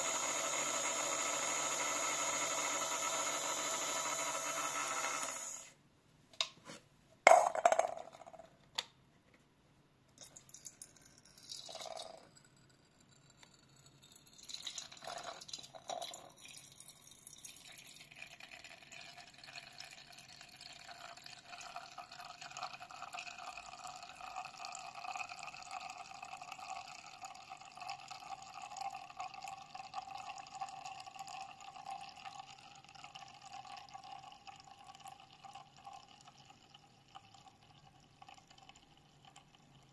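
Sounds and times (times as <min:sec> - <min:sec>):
tap water filling container: 0:14.4 - 0:39.9.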